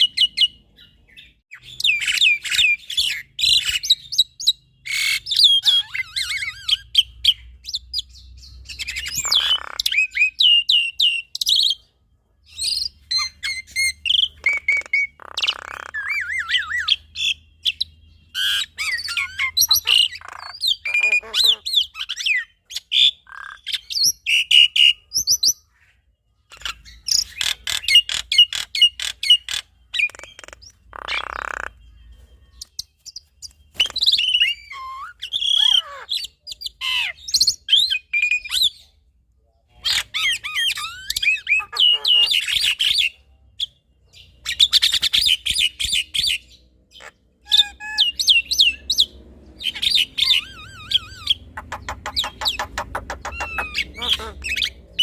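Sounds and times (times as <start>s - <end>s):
harsh rasping bird call: 18.4s - 22.4s, 49.6s - 55.0s.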